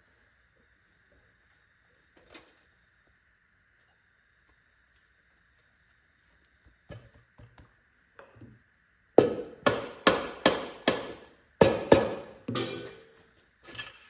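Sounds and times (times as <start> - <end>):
hammer striking metal: 9.2 - 13.2.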